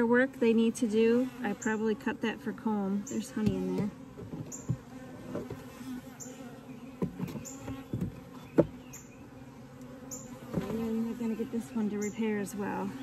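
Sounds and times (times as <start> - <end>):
honeybees buzzing: 0.0 - 13.0
hive frames knocking: 3.2 - 5.8, 6.9 - 9.0.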